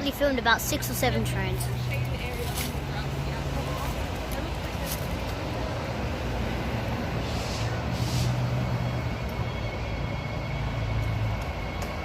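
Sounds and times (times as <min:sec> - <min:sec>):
electric train motor hum: 0:02.9 - 0:12.0
brief hiss: 0:07.2 - 0:08.5.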